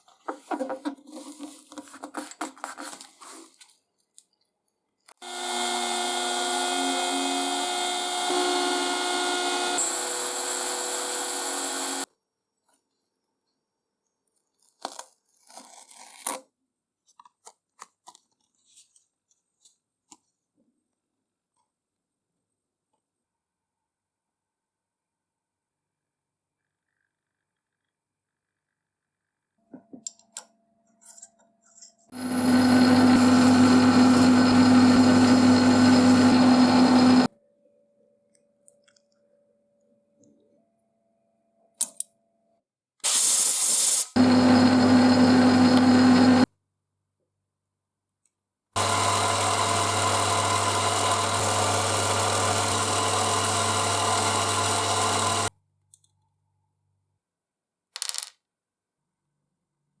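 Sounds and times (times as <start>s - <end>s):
electric motor humming: 5.2s - 12.1s, 32.2s - 37.3s, 44.2s - 46.4s, 48.8s - 55.5s
short loud hiss: 43.0s - 44.2s.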